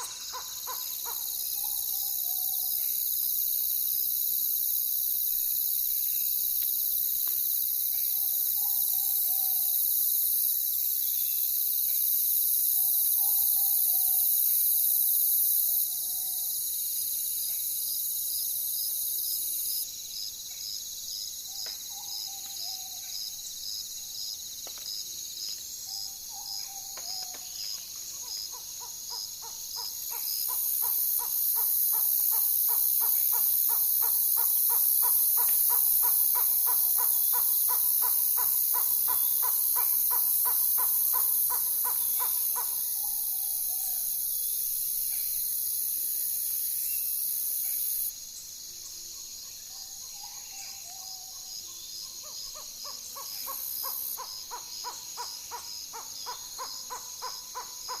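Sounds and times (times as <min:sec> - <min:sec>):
owl trilling hoots: 0:00.0 - 0:02.7, 0:08.6 - 0:09.7
insects chirping: 0:00.0 - 0:58.0.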